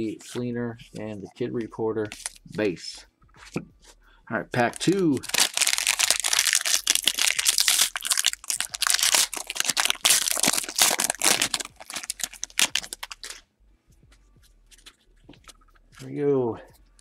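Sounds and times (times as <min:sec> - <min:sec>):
card pack wrapper tearing: 0:02.1 - 0:02.6, 0:04.7 - 0:13.4.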